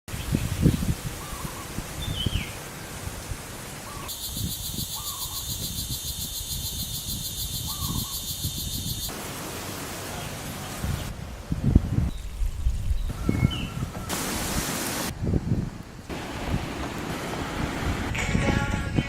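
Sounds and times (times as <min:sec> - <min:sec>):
pulsing insect chorus: 0:04.1 - 0:09.2.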